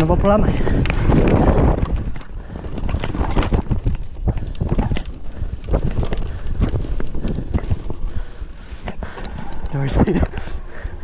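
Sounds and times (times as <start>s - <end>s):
bike knocks and rattles: 0.0s - 8.1s
wind buffeting microphone: 0.0s - 11.0s.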